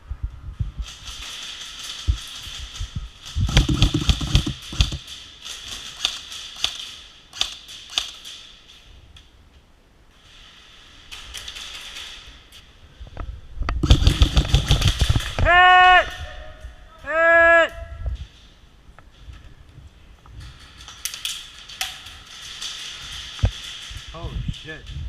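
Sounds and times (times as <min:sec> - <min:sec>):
pellet impacts: 0:03.3 - 0:05.0, 0:13.8 - 0:15.6
airsoft guns firing: 0:03.4 - 0:05.1, 0:13.8 - 0:15.9.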